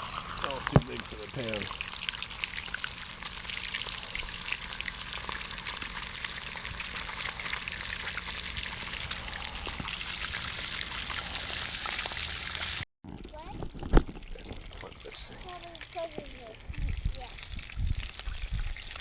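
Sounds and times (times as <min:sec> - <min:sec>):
fish sizzling in hot oil: 0:00.0 - 0:12.8.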